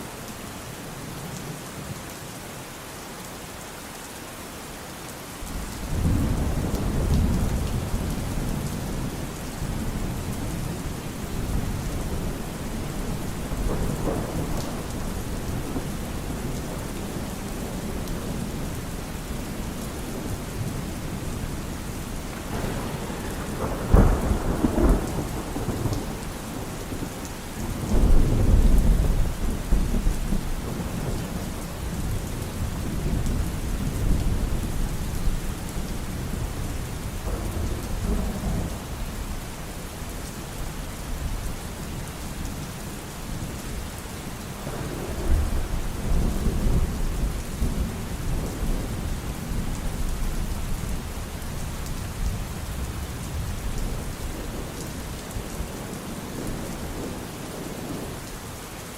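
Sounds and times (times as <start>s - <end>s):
steady rain falling: 0.0s - 58.9s
thunder rumbling: 5.9s - 39.4s, 44.6s - 58.1s.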